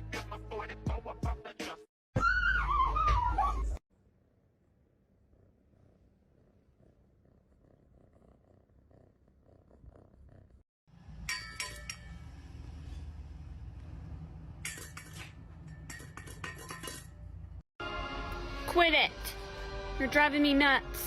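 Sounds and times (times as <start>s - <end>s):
cat purring: 4.2s - 10.7s
sharp clinking and tapping: 11.2s - 12.4s, 14.6s - 17.2s.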